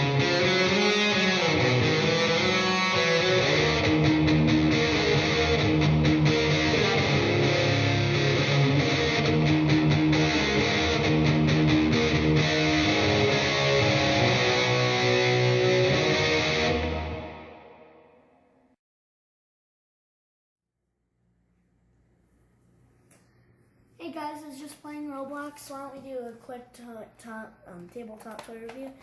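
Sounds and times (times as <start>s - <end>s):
bass line: 0.0s - 17.5s
electric guitar strummed chords: 0.0s - 18.2s.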